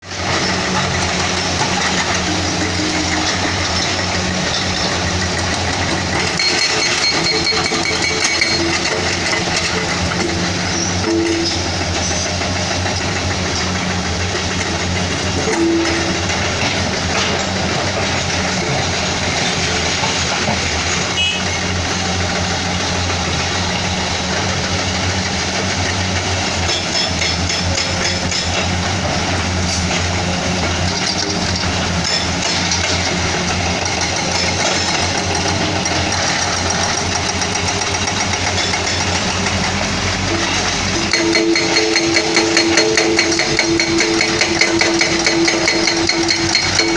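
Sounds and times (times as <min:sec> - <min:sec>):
diesel engine under load: 0:00.0 - 0:46.9
metallic clanks: 0:37.6 - 0:46.9.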